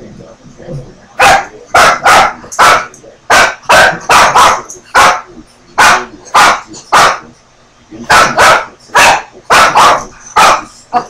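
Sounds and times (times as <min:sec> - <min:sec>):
dog barking: 0:01.2 - 0:07.3, 0:08.0 - 0:10.7.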